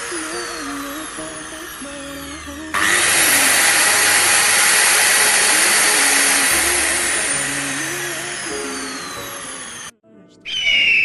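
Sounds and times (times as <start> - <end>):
circular saw running: 0.0 - 9.9.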